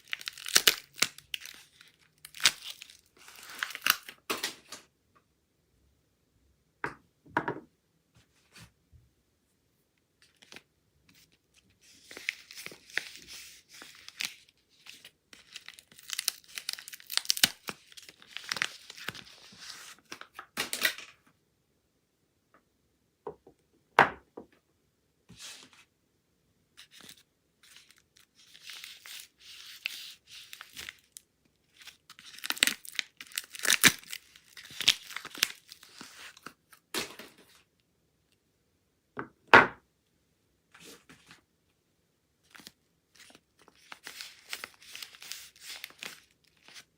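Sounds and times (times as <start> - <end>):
wrappers tearing and crinkling: 0.0 - 4.2, 12.0 - 20.0, 26.8 - 36.5, 42.5 - 46.9.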